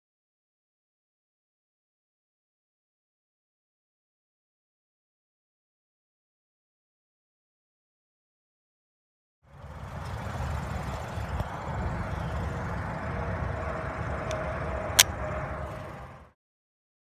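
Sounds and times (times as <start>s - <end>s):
low rumble with hiss: 9.5s - 16.3s
sharp click: 15.0s - 15.2s.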